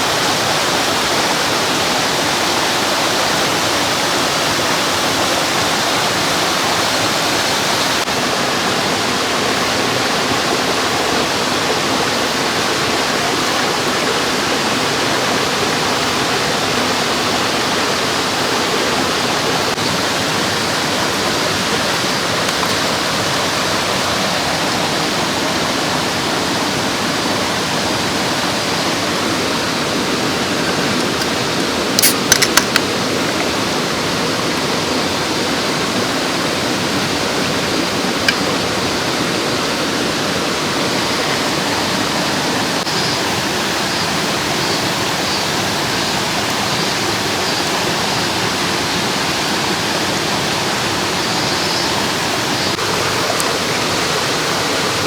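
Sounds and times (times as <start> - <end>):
stream rushing over rocks: 0.0 - 55.0.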